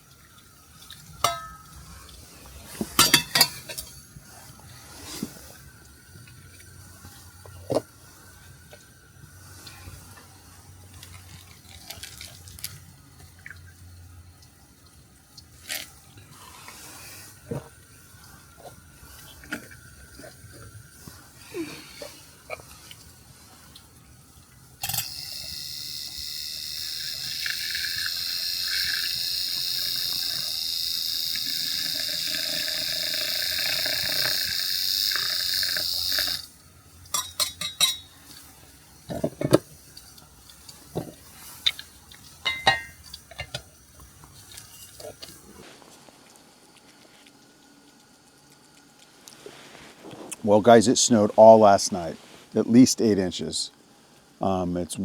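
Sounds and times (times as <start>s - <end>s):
water running into container: 0.0s - 49.6s
kitchen items clicking and clattering: 2.8s - 3.9s.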